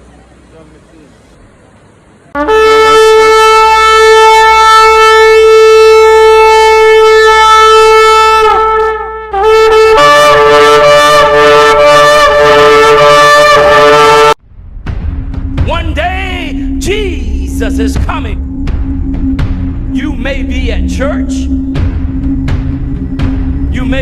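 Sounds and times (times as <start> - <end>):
loud trumpet-like horn blasts: 2.4 - 14.4.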